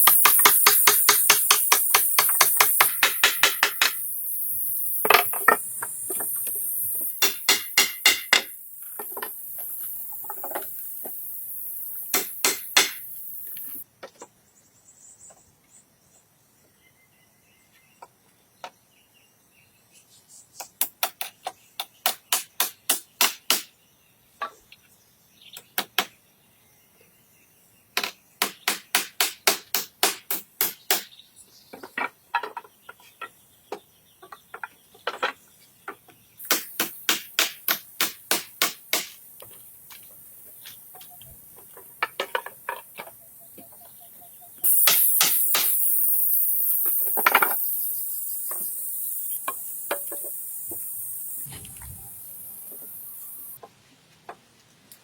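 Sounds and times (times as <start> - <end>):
hand tools striking wood: 0.0 - 4.0, 5.0 - 9.4, 12.1 - 13.1, 20.8 - 23.7, 28.0 - 31.1, 31.7 - 43.2, 44.6 - 45.8
steady high hiss: 0.0 - 13.8, 36.4 - 42.3, 44.5 - 53.6.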